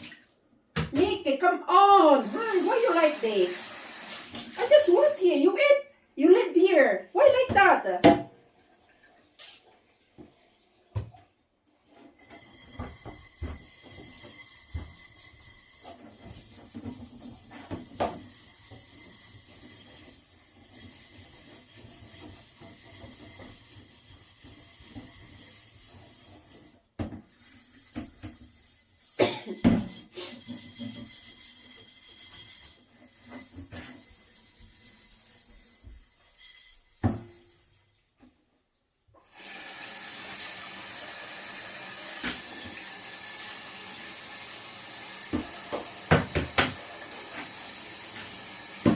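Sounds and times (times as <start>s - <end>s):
rubbing and scraping on wood: 11.8s - 29.2s, 29.8s - 38.4s.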